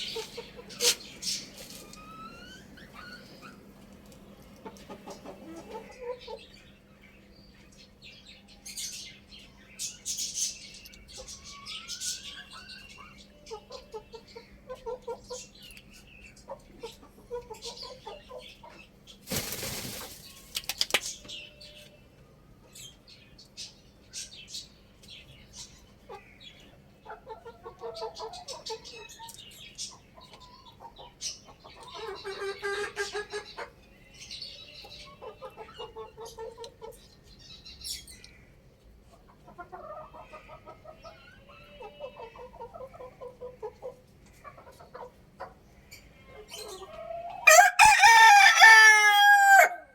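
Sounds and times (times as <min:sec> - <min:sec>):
chickens clucking: 0:00.0 - 0:07.9, 0:08.7 - 0:49.9
wing flapping: 0:19.3 - 0:20.8.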